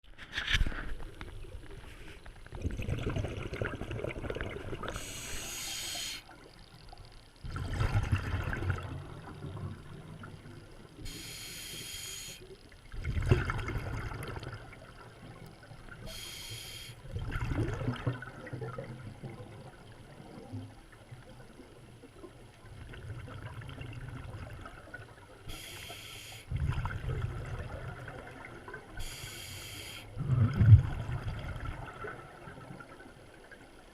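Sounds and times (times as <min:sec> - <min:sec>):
exhaled bubbles rumbling: 0:02.4 - 0:05.1, 0:07.3 - 0:10.9, 0:12.8 - 0:16.1, 0:17.0 - 0:25.4, 0:26.5 - 0:29.1, 0:30.1 - 0:33.4
regulator inhale hiss: 0:04.9 - 0:06.3, 0:11.0 - 0:12.5, 0:16.0 - 0:17.0, 0:25.5 - 0:26.5, 0:29.0 - 0:30.2.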